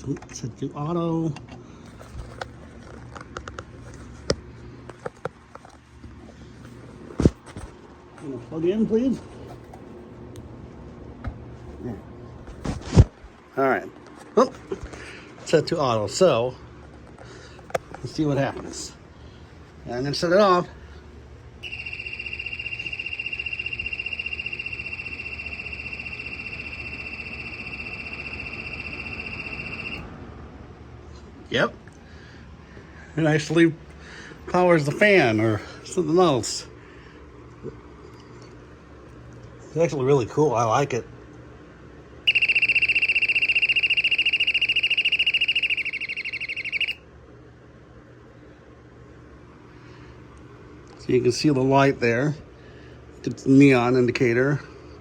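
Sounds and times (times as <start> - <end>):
faint low hum: 0.0 - 55.0
fluttering smoke alarm tone: 21.6 - 30.0, 42.3 - 47.0.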